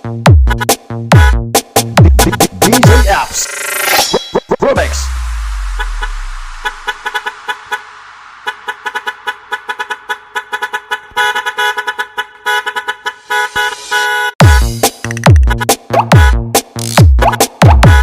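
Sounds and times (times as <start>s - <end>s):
heavy bass kicks: 0.0s - 3.2s, 14.4s - 18.0s
truck horn rhythmic blasts: 0.4s - 2.5s, 5.6s - 18.0s
low bass note: 4.8s - 7.0s.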